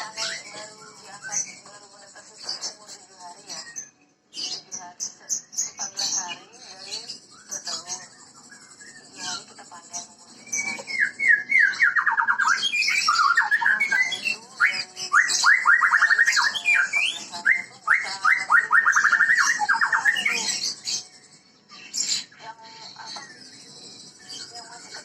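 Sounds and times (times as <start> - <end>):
bird singing whistled notes: 5.6 - 9.5, 10.3 - 22.4.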